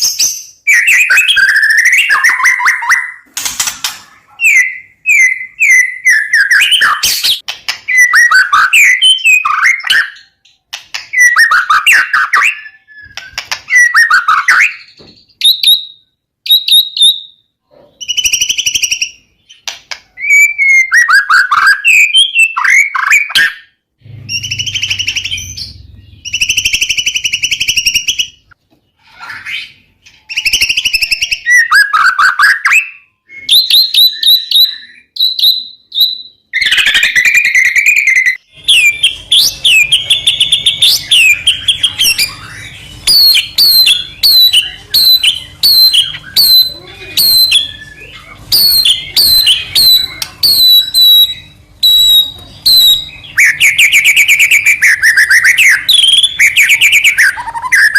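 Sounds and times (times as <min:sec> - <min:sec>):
bird singing whistled phrases: 0:00.0 - 0:03.3, 0:04.3 - 0:10.4, 0:11.1 - 0:17.4, 0:20.2 - 0:28.5, 0:29.3 - 0:57.9
bird sharp repeated notes: 0:00.0 - 0:28.6.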